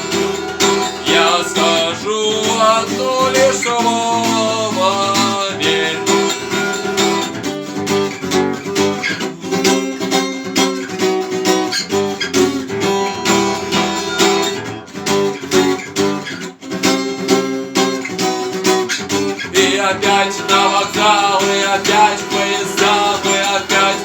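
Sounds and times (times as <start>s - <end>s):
person singing: 0.0s - 7.3s, 19.5s - 24.0s
acoustic guitar strumming: 0.0s - 24.0s.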